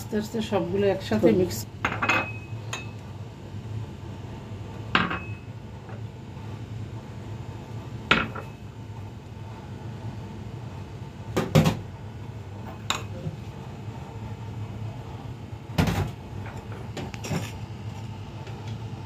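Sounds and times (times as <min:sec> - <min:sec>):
steady low hum: 0:00.0 - 0:19.0
dishes and spoons clinking: 0:01.9 - 0:03.0, 0:12.7 - 0:13.2.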